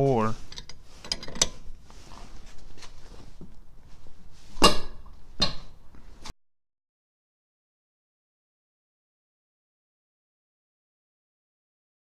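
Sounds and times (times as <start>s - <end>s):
lug wrench handling noise: 0.4s - 1.7s.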